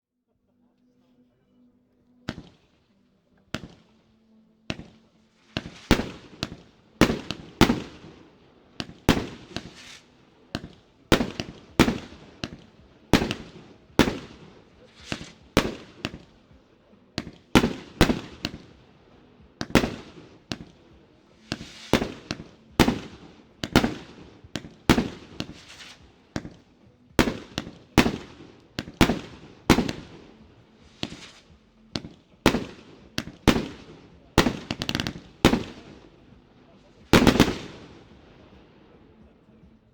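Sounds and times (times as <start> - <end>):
firework bangs: 2.3 - 2.7, 4.7 - 16.6, 17.2 - 18.9, 19.5 - 38.7
firework shell hiss: 8.8 - 10.2, 21.4 - 22.2.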